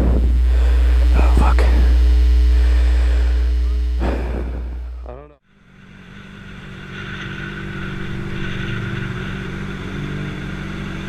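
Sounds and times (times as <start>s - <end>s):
vehicle engine running: 0.0s - 11.0s
road noise: 4.7s - 11.0s.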